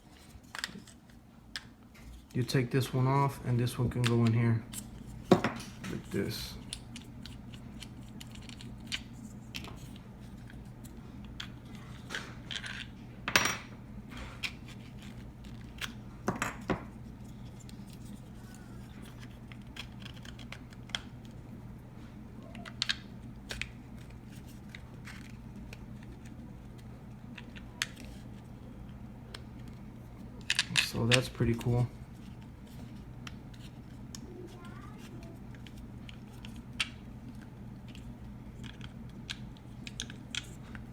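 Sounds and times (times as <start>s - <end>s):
steady low hum: 0.0s - 40.9s.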